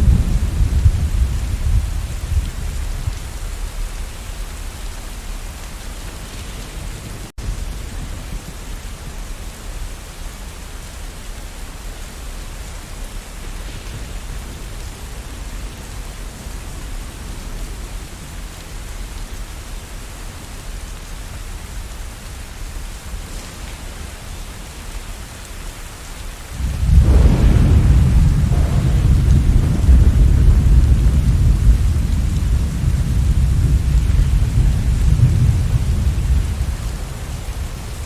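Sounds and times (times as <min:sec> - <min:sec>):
loud thunderclap: 0:00.0 - 0:03.2, 0:26.6 - 0:38.0
distant thunder rumbling: 0:00.0 - 0:03.9, 0:26.5 - 0:38.0
steady rain: 0:00.0 - 0:38.0.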